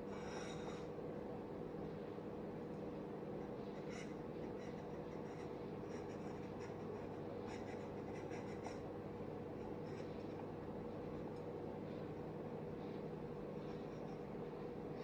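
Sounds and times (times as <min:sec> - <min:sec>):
steady low hum: 0:00.0 - 0:15.0
pen scratching on paper: 0:03.8 - 0:08.8.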